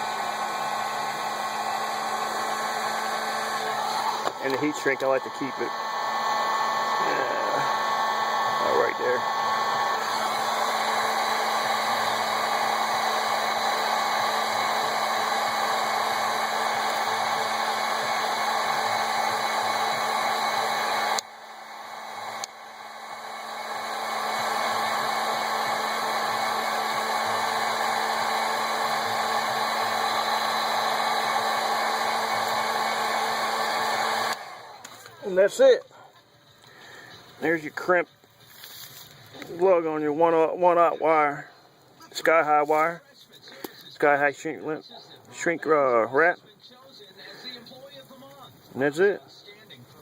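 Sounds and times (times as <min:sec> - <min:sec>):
heat gun blowing with a hum: 0:00.0 - 0:35.8.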